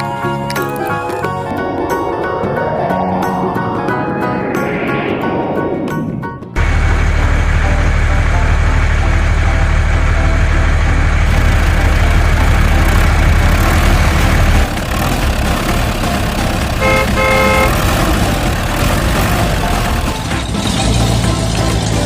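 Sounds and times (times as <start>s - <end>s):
vehicle engine rumbling: 0.0s - 22.0s
short horn toots: 16.8s - 17.8s.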